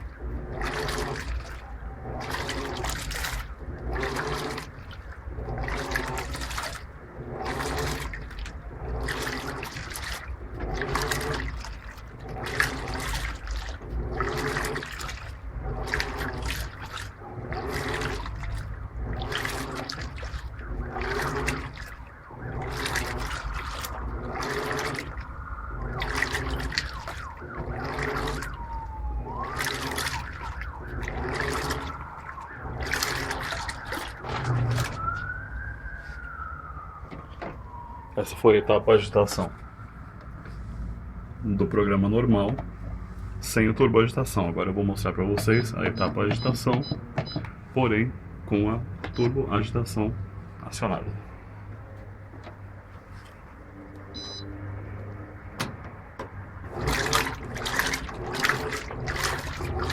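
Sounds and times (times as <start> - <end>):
motor humming: 0.0 - 35.4
washing machine agitator swishing: 0.0 - 59.9
water sloshing: 0.0 - 59.9.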